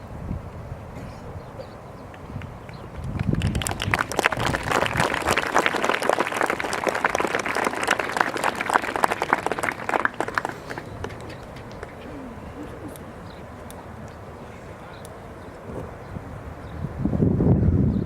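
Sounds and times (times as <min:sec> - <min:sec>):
crowd applauding: 0:02.4 - 0:15.8.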